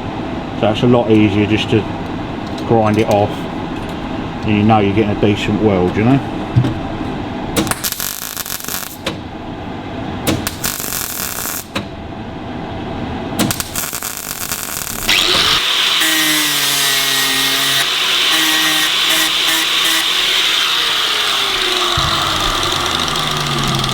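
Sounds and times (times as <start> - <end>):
electric welding crackling: 7.6 - 9.1, 10.3 - 11.8, 13.4 - 23.9
angle grinder on metal: 14.0 - 23.9.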